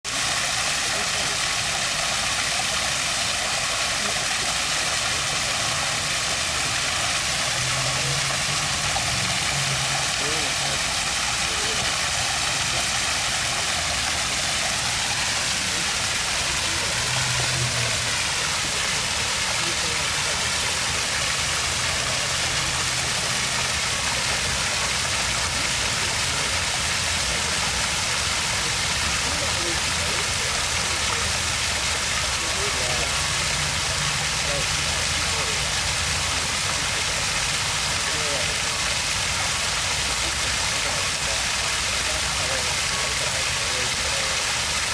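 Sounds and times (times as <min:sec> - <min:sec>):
water stream rushing: 0:00.0 - 0:44.9.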